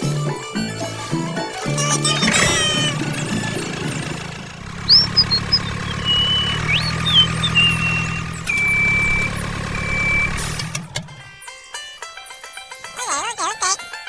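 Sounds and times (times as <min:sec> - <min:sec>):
small motor humming: 0:01.6 - 0:10.5
short high chirps: 0:04.9 - 0:09.3.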